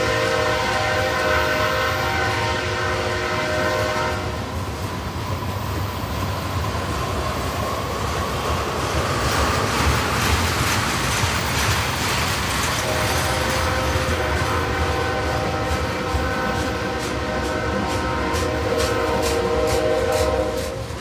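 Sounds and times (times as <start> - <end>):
locomotive horn chord: 0.0 - 4.4, 12.8 - 20.9
train wheels rumbling on rails: 0.0 - 21.0.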